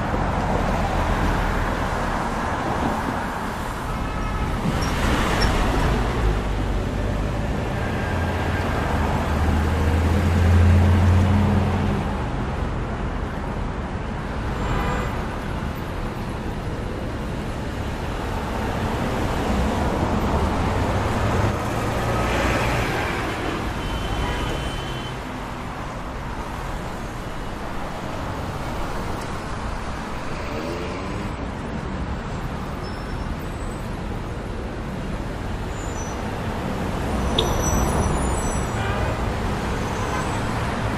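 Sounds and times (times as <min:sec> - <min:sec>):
passing cars: 0:00.0 - 0:40.9.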